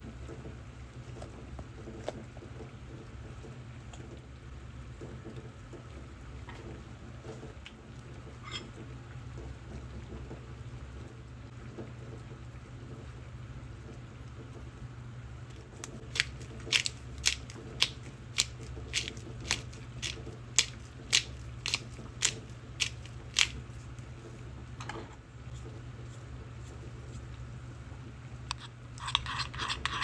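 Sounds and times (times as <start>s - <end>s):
steady low hum: 14.6s - 30.0s
knife chopping on cutting board: 16.1s - 23.6s.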